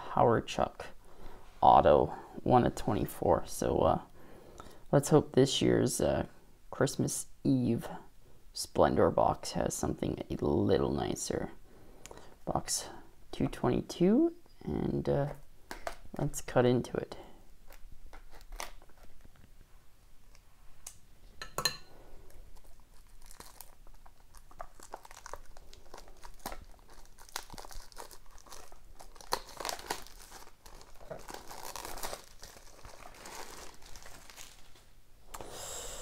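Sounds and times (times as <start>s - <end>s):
wrapping crinkling and tearing: 17.6s - 19.4s, 22.2s - 35.0s.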